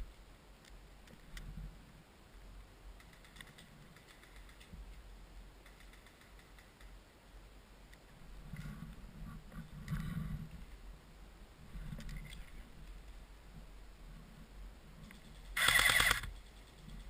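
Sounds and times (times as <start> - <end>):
distant airsoft gun bursts: 15.4 - 16.8.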